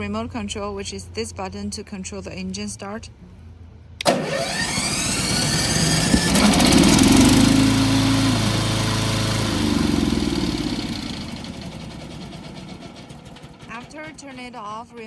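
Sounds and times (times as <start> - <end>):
lawn mower engine running: 4.0 - 15.0.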